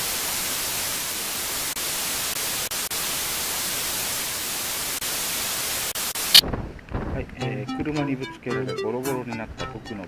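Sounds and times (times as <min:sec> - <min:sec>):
static hiss: 0:00.0 - 0:06.5.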